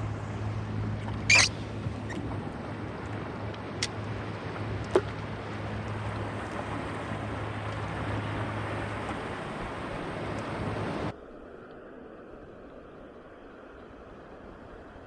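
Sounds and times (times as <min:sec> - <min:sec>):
jet ski engine idling: 0:00.0 - 0:11.1
sea noise: 0:00.0 - 0:15.0
wind: 0:00.0 - 0:15.0.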